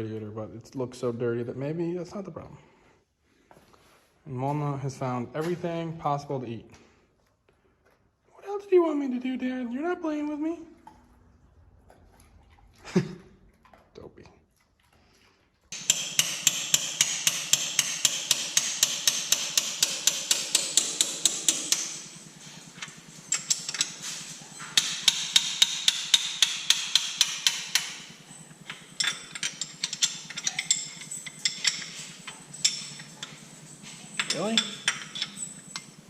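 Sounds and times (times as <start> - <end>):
rapid hammer blows on metal: 15.8 - 36.0.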